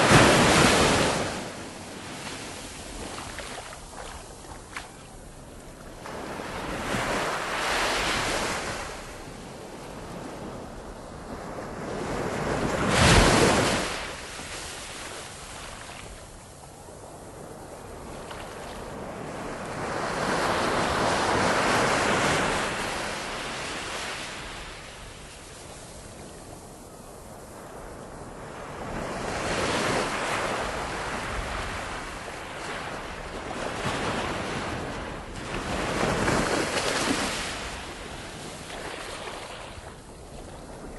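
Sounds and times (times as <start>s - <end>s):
ocean waves washing in: 0.0s - 4.8s.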